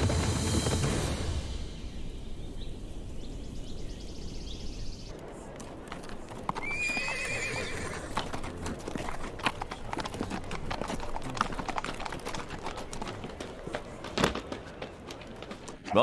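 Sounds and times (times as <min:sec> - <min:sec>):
horse hooves clattering: 0:04.1 - 0:16.0
horse neighing: 0:06.6 - 0:08.3.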